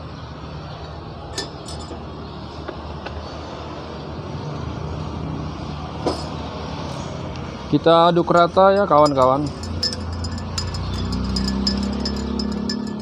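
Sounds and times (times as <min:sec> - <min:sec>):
spoon clinking against cup: 0:08.3 - 0:13.0.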